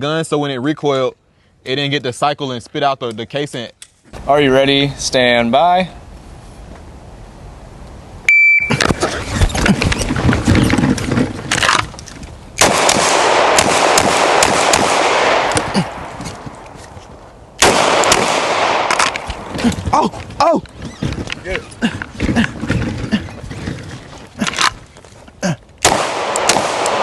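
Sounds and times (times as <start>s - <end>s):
shot timer beep: 8.3s - 8.8s
pistol firing rapid shots: 12.6s - 15.7s, 17.6s - 19.2s, 25.8s - 27.0s.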